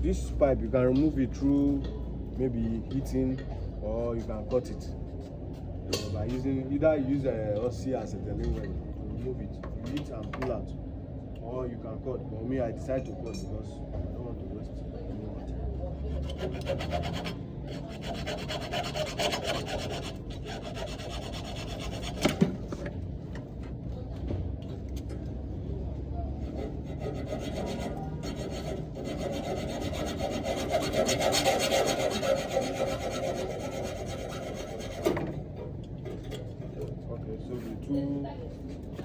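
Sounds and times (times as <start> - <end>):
cutting tool rasping on metal pipe: 16.1 - 22.4, 26.4 - 35.2.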